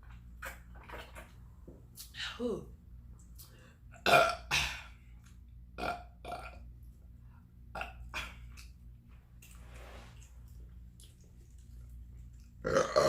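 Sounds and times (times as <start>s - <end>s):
person burping: 4.0s - 5.0s, 5.8s - 6.6s, 12.6s - 13.0s.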